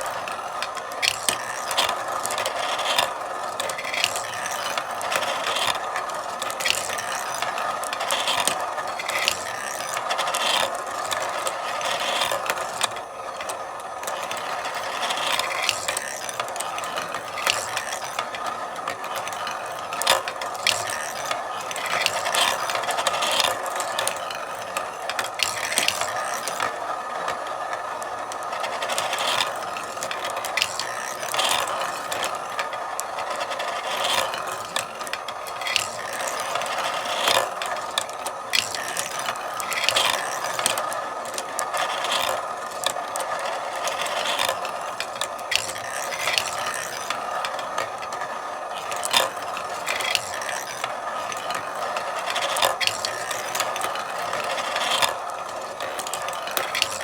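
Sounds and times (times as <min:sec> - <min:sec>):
marbles rolling and clacking on track: 0:00.0 - 0:57.0.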